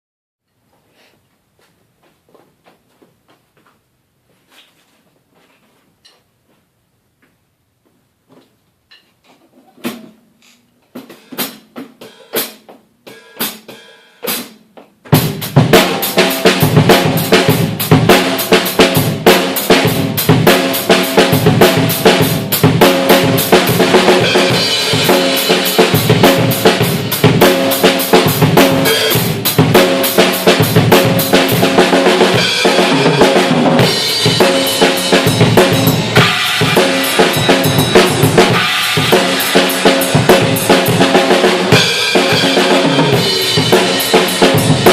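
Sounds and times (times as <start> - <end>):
drum kit groove: 9.8 - 44.9.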